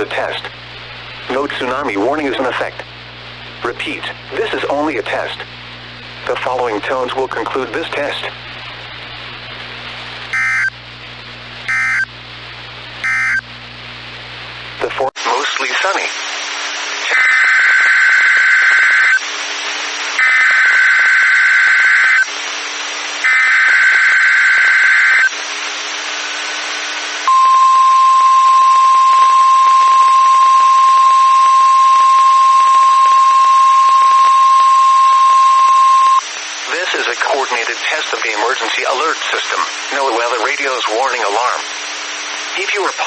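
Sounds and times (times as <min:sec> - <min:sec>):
steady warning alarm tone: 0:10.3 - 0:10.8, 0:11.7 - 0:12.1, 0:13.0 - 0:13.5, 0:27.3 - 0:36.2
buzzing digital data bursts: 0:10.4 - 0:10.8, 0:11.7 - 0:12.1, 0:13.0 - 0:13.4.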